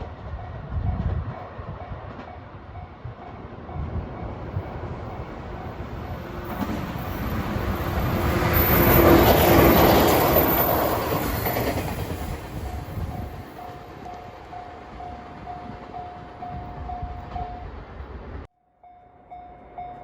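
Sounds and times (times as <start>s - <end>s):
electric train passing: 0.0s - 20.0s
crossing warning bell ringing: 2.8s - 17.8s.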